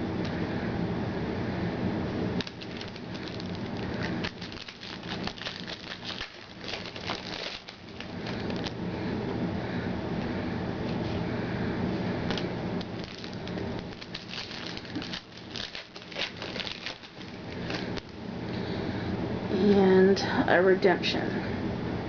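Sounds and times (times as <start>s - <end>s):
steady low hum: 0.0s - 22.0s
cards crinkling and rustling: 2.4s - 8.8s, 12.3s - 18.2s.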